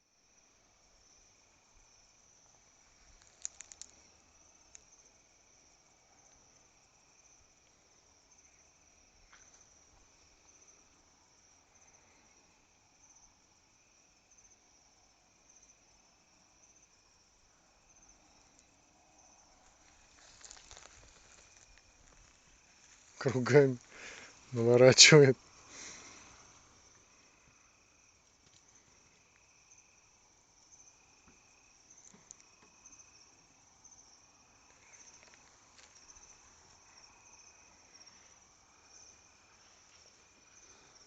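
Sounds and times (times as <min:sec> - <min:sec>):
crickets chirring: 0:00.0 - 0:41.0
light rustle: 0:02.6 - 0:04.9, 0:19.5 - 0:24.7.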